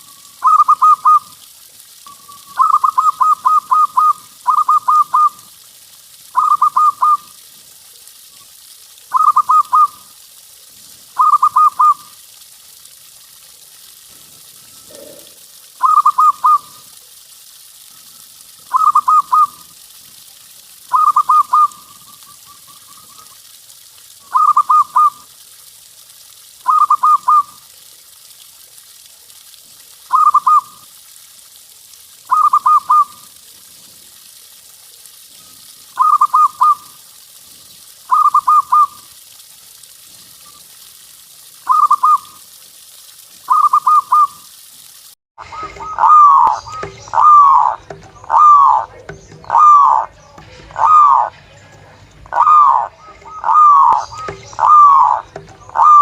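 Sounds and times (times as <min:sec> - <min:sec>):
background hiss: 0:00.0 - 0:55.9
dove cooing: 0:00.4 - 0:01.3, 0:02.5 - 0:05.5, 0:06.4 - 0:07.2, 0:09.1 - 0:10.0, 0:11.2 - 0:12.1, 0:14.8 - 0:16.8, 0:18.7 - 0:19.7, 0:20.9 - 0:22.4, 0:24.3 - 0:25.2, 0:26.7 - 0:27.6, 0:30.1 - 0:30.7, 0:32.3 - 0:33.2, 0:36.0 - 0:36.8, 0:38.1 - 0:39.0, 0:41.7 - 0:42.3, 0:45.5 - 0:51.3, 0:52.3 - 0:56.0.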